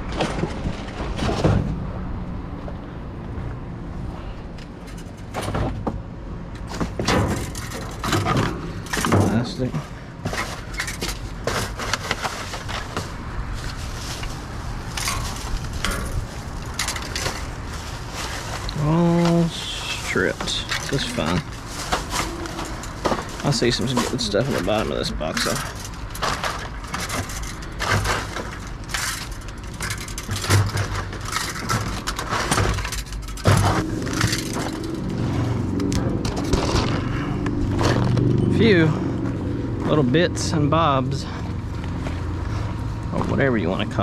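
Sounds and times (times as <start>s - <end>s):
hands rummaging through scrap: 6.6s - 37.1s
low engine hum: 33.4s - 44.0s.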